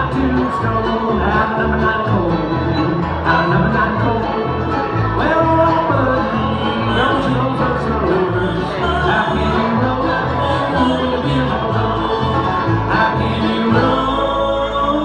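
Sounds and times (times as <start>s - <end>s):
banjo playing: 0.0s - 15.0s
bass line: 0.0s - 15.0s
guitar playing: 0.0s - 15.0s
person singing: 0.0s - 15.0s.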